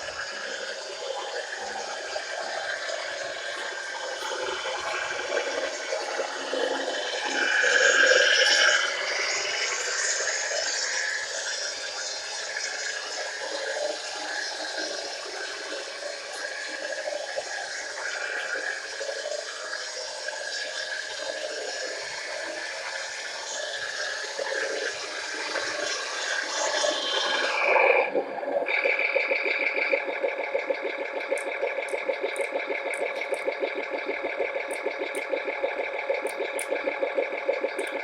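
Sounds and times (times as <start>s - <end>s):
simulated diesel engine through speaker: 0.0s - 12.2s, 23.5s - 38.0s.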